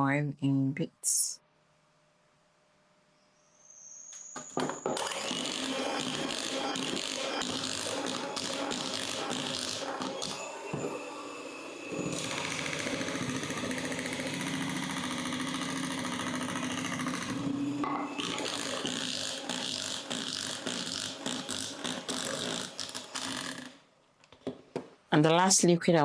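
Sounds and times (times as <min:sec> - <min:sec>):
electric mixer whipping batter: 0:04.6 - 0:23.7.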